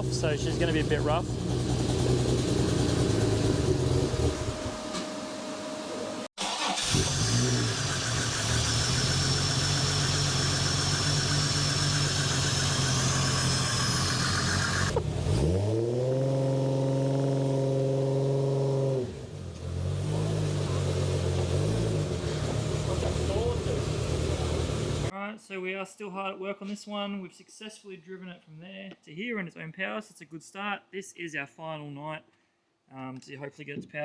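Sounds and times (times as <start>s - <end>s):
car engine running rough: 0.0s - 5.0s, 6.7s - 15.8s, 16.4s - 25.1s
engine revving: 0.0s - 5.0s, 6.4s - 25.1s.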